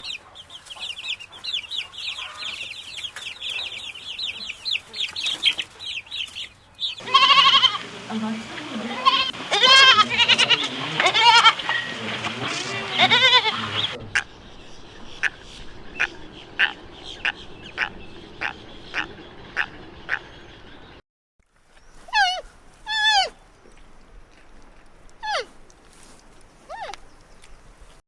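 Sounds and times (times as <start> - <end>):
animal chirping: 0.0 - 7.8, 13.2 - 21.0, 22.0 - 23.4, 26.7 - 27.0
cat meowing: 7.0 - 7.8
livestock bleating: 7.0 - 7.8, 8.8 - 11.6, 12.5 - 14.3.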